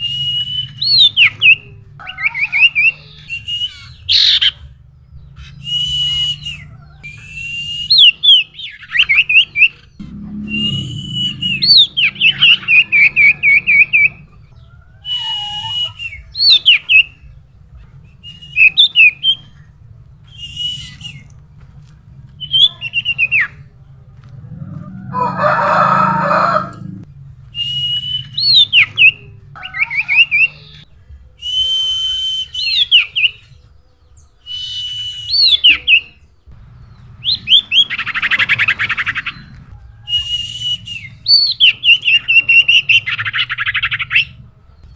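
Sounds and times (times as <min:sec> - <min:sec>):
bird singing whistled notes: 0:00.0 - 0:04.6, 0:05.4 - 0:14.3, 0:15.0 - 0:17.2, 0:18.2 - 0:21.3, 0:27.6 - 0:30.8, 0:31.4 - 0:44.3.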